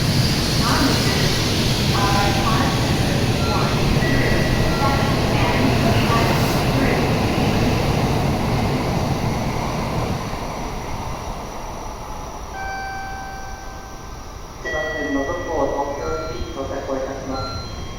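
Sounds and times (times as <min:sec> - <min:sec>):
high-speed train rushing: 0:00.0 - 0:17.9
steady high tones: 0:03.4 - 0:05.6, 0:12.5 - 0:17.9.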